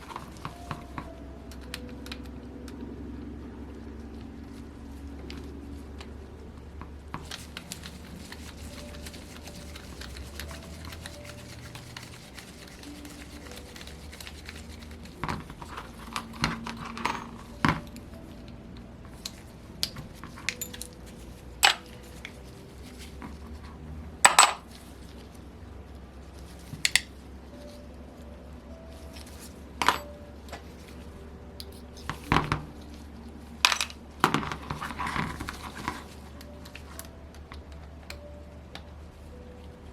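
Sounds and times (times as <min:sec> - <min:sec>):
low steady hum: 0:00.0 - 0:39.9
metal tools clinking: 0:16.8 - 0:17.4, 0:20.5 - 0:21.0, 0:21.6 - 0:21.9, 0:24.2 - 0:24.6, 0:29.8 - 0:30.1.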